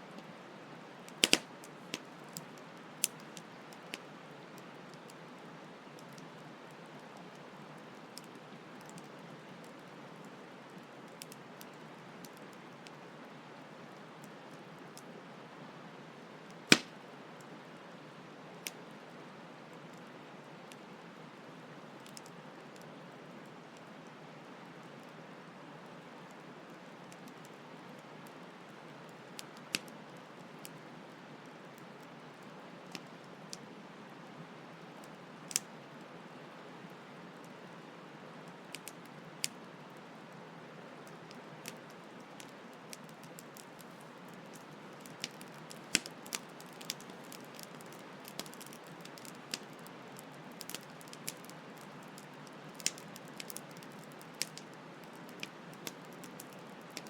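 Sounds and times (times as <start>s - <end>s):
campfire crackling and popping: 1.0s - 5.1s, 6.0s - 13.0s, 16.5s - 17.6s, 26.8s - 30.8s, 32.8s - 33.6s, 34.7s - 35.9s, 38.4s - 57.0s.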